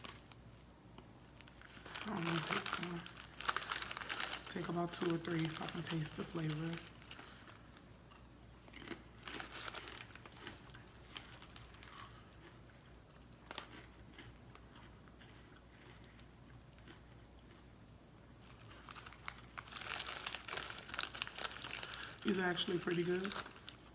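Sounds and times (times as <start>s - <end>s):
person chewing crunchy chips: 1.4s - 23.9s.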